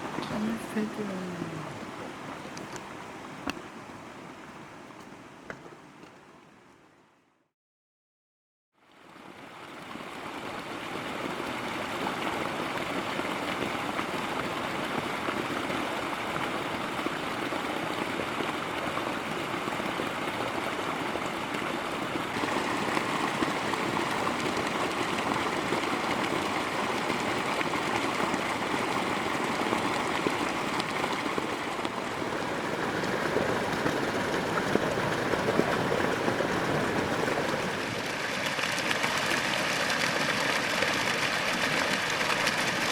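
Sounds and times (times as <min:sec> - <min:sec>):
flowing water rushing: 0:00.0 - 0:06.7, 0:08.8 - 0:42.9.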